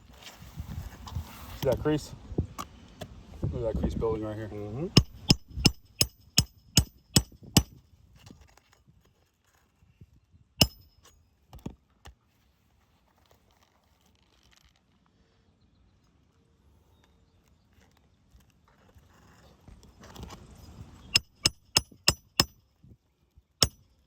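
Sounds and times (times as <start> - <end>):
hammer striking metal nail: 5.0 - 7.8, 10.6 - 11.1, 21.1 - 22.6, 23.6 - 23.9.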